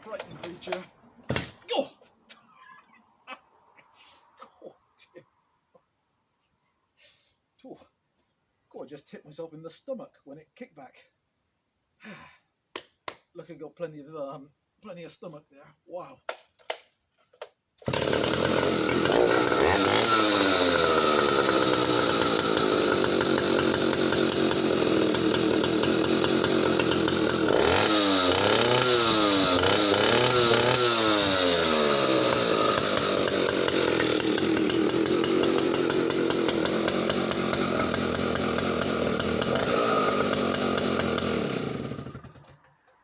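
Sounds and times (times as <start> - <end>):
chainsaw running and revving: 17.8 - 42.6.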